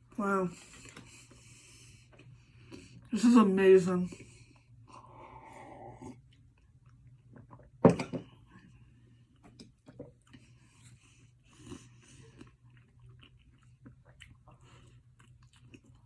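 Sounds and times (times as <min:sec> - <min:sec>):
low steady hum: 0:00.0 - 0:16.0
chewing and mouth noises: 0:09.3 - 0:16.0.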